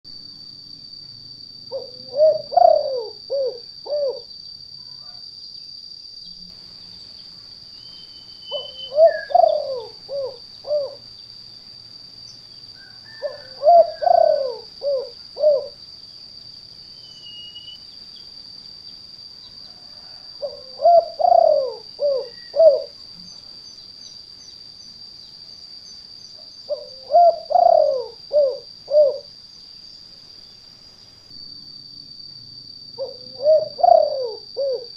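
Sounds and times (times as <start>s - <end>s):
steady high-pitched whine: 0.1s - 34.9s
dove cooing: 1.7s - 4.3s, 8.5s - 11.1s, 12.8s - 15.8s, 20.0s - 23.0s, 26.7s - 29.3s, 33.0s - 34.9s.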